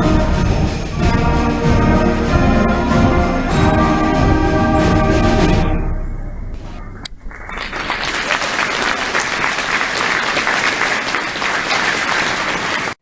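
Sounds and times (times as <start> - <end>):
concert band chord: 0.0 - 7.0
audience applause: 7.2 - 13.0.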